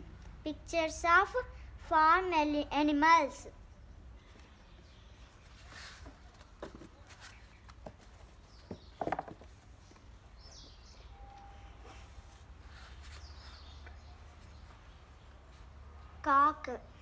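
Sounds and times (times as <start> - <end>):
faint high chirps: 10.4 - 14.9.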